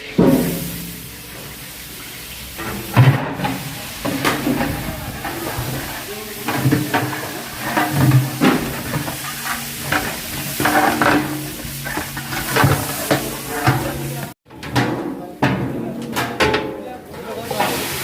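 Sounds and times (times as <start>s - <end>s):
food sizzling: 0.0s - 14.4s, 17.2s - 18.0s
ladle scraping a pot: 2.6s - 14.4s.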